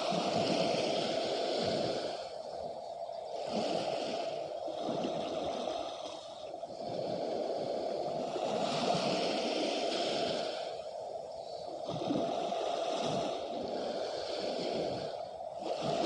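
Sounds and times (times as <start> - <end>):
sea water washing ashore: 0.0 - 16.0.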